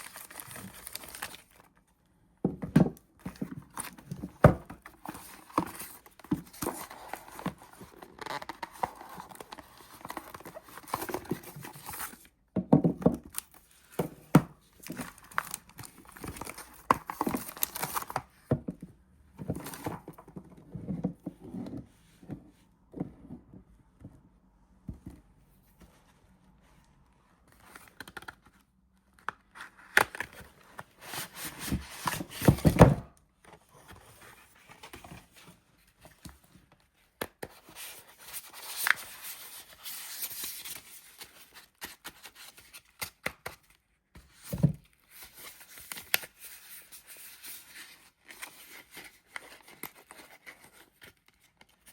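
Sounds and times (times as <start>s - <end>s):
wrappers crinkling and tearing: 0.0s - 1.7s.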